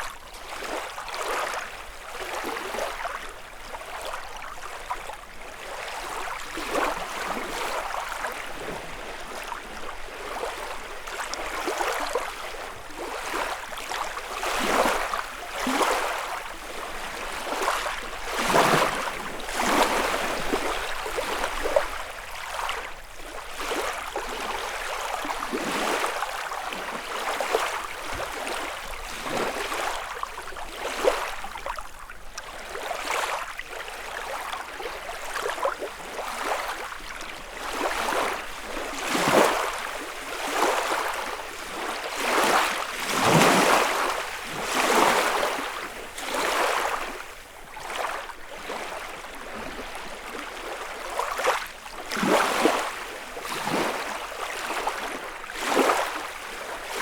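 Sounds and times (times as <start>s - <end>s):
waves lapping on shore: 0.0s - 57.0s.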